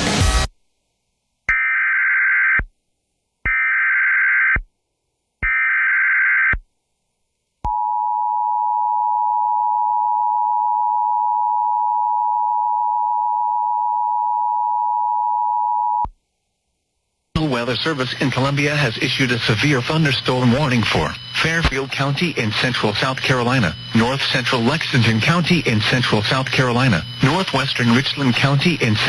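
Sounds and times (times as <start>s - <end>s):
digital data bursts: 17.5s - 29.0s.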